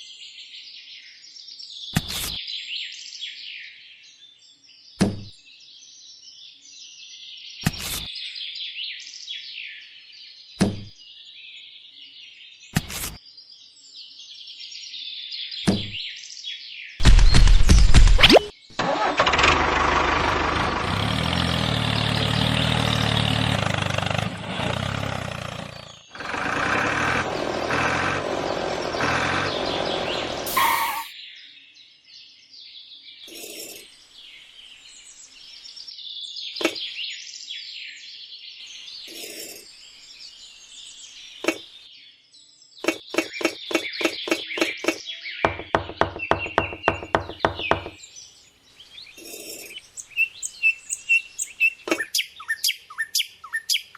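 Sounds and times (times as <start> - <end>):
small engine running loudly: 18.8 - 31.0
birds chirping: 20.6 - 31.2, 42.6 - 53.9.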